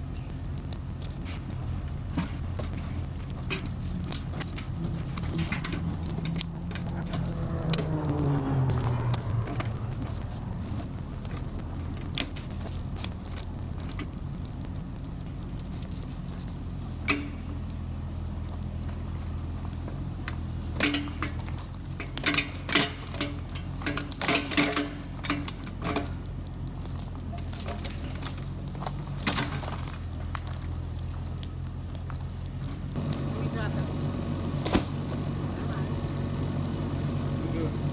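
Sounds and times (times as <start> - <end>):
diesel engine running: 0.0 - 37.9
metallic clanks and knocks: 1.2 - 10.4, 20.2 - 26.3.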